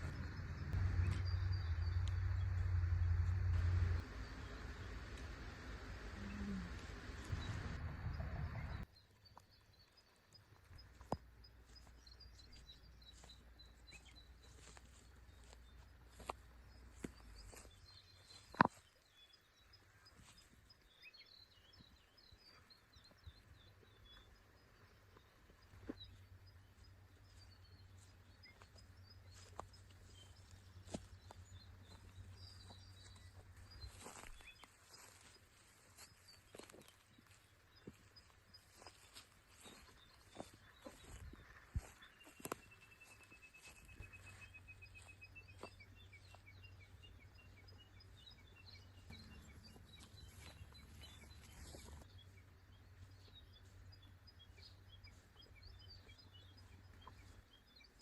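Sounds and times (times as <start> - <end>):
low steady hum: 0.0 - 8.8, 43.6 - 57.5
small birds chirping: 0.0 - 58.0.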